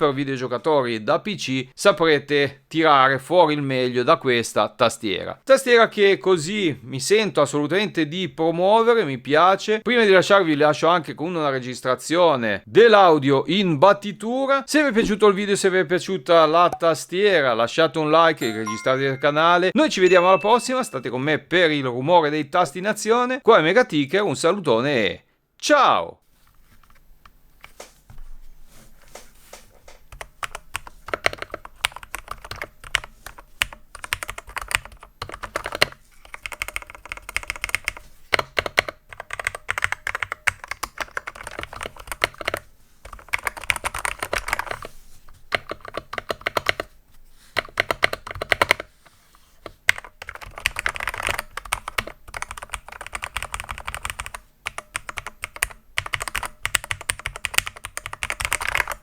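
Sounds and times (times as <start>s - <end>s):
keyboard typing clacks: 29.9s - 44.9s, 45.5s - 46.9s, 47.6s - 48.9s, 49.7s - 59.0s.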